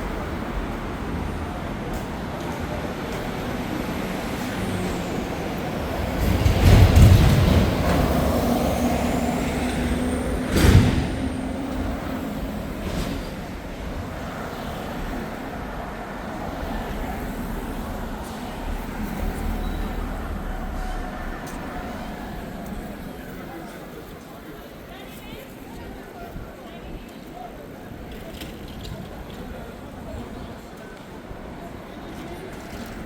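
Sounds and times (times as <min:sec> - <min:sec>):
city street traffic: 0:00.0 - 0:33.0
heavy vehicle rumbling past: 0:00.1 - 0:24.0.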